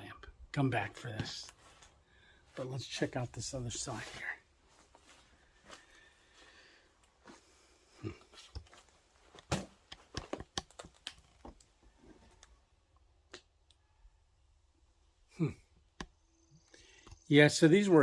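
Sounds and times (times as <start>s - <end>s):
footsteps crunching on debris: 3.9s - 6.4s.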